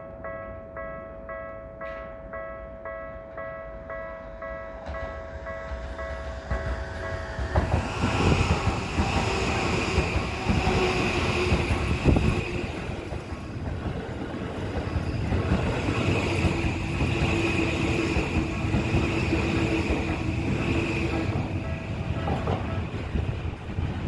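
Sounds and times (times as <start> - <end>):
level crossing warning bell: 0.0 - 7.4
train rumbling over rails: 3.3 - 24.0.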